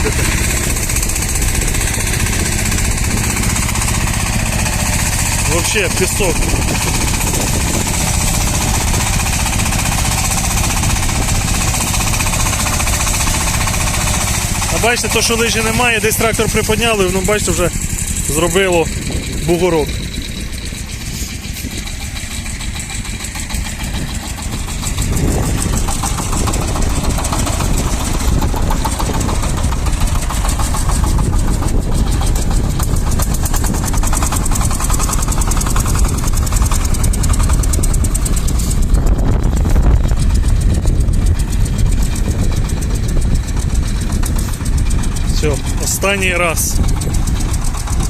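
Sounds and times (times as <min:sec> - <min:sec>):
tractor diesel engine under load: 0:00.0 - 0:48.0.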